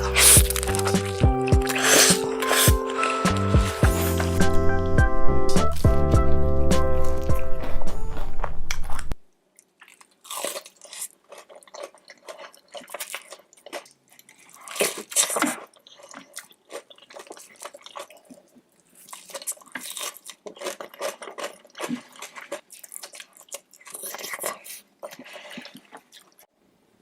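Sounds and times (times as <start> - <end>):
crunchy bites and chewing: 0.0 - 4.6, 7.0 - 26.5
music: 0.0 - 8.6.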